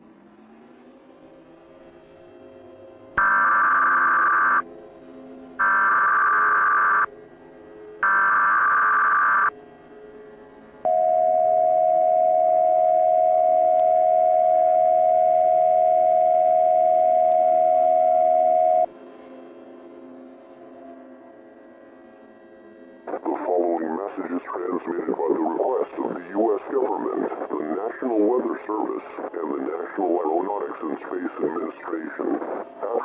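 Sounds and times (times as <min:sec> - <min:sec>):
loud data tone bursts: 0:03.2 - 0:04.6, 0:05.6 - 0:07.1, 0:08.0 - 0:09.5
steady attention tone: 0:03.2 - 0:04.6, 0:05.6 - 0:07.1, 0:08.0 - 0:09.5, 0:10.9 - 0:18.9.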